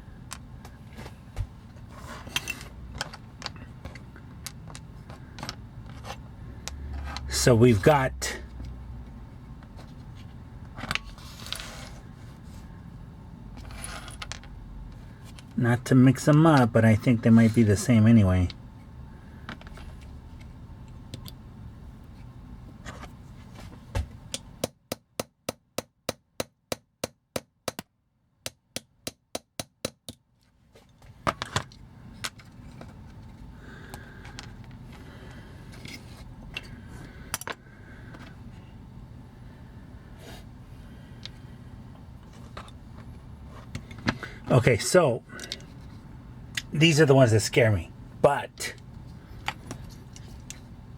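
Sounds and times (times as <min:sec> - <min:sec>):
steady low hum: 0:00.0 - 0:25.0, 0:30.6 - 0:50.9
hammer tapping a metal punch: 0:24.3 - 0:27.9, 0:28.5 - 0:30.2.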